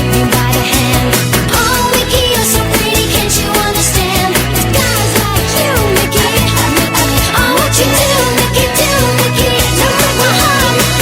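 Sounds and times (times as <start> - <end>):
pop music: 0.0 - 11.0.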